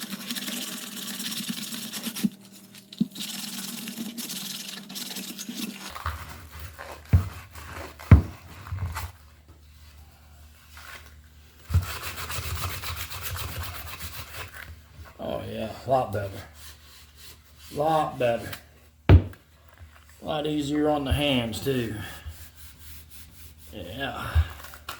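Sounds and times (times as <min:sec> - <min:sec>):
wood knocking: 0:08.1 - 0:08.4, 0:19.1 - 0:19.4
sandpaper scraping wood: 0:11.7 - 0:14.7, 0:16.0 - 0:18.1, 0:21.4 - 0:24.8.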